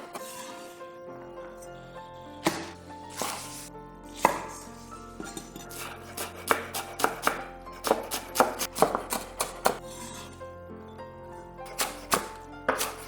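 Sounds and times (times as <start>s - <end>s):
soft background music: 0.0s - 13.0s
knife chopping on cutting board: 2.4s - 3.6s, 4.2s - 4.6s, 5.3s - 9.8s, 11.7s - 13.0s.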